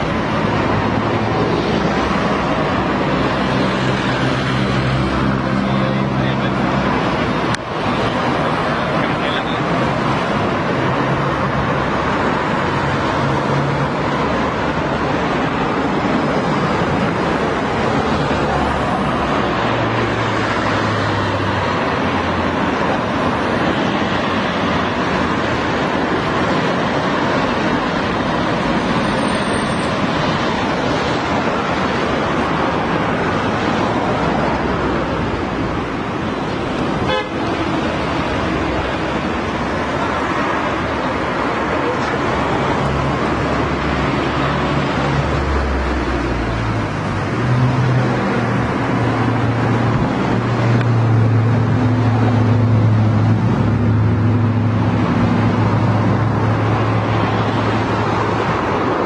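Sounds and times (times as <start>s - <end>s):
car and motorbike engines: 0.0s - 59.0s
tyres passing: 0.0s - 59.0s
car horns tooting: 37.0s - 37.6s.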